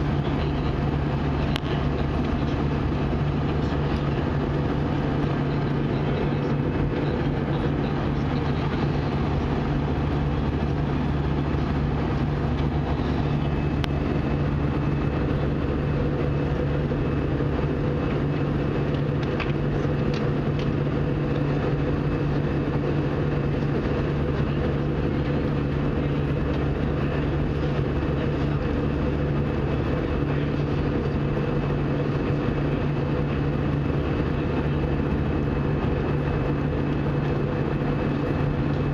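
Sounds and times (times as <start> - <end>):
airplane cabin drone: 0.0 - 38.9.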